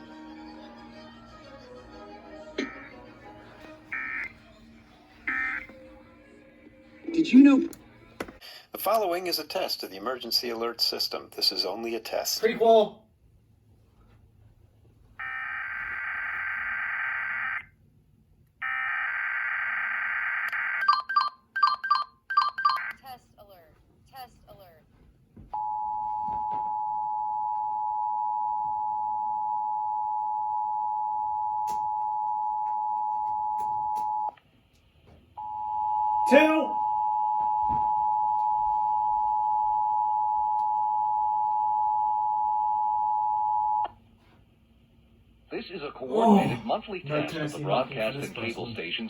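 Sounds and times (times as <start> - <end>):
two-tone alarm: 3.9 - 4.3, 15.2 - 17.7, 18.6 - 22.9.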